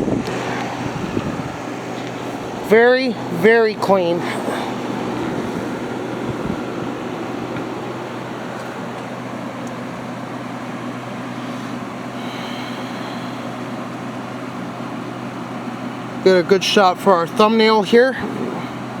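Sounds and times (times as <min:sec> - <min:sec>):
low hum: 0:00.0 - 0:13.6
air conditioner fan rushing: 0:00.0 - 0:19.0.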